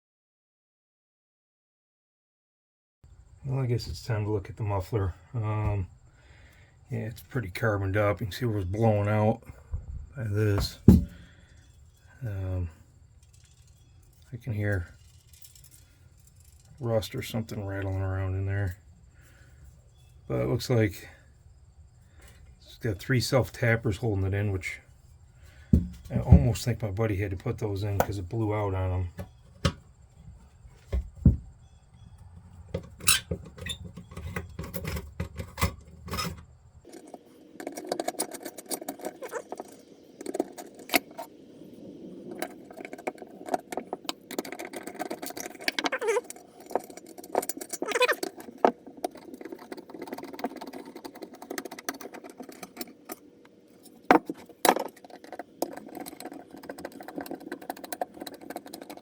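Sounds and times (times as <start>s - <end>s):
metal tools clanking on metal: 32.7s - 41.3s, 43.6s - 53.2s.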